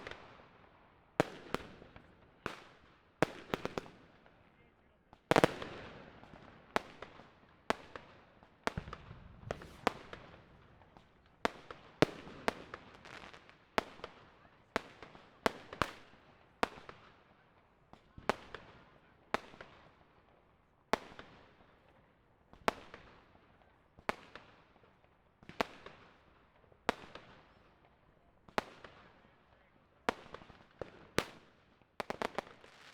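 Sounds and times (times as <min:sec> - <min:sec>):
fireworks bangs with echo: 0:01.2 - 0:04.4, 0:05.1 - 0:17.2
firecrackers popping and crackling: 0:01.2 - 0:20.4, 0:21.0 - 0:29.4, 0:30.0 - 0:32.9.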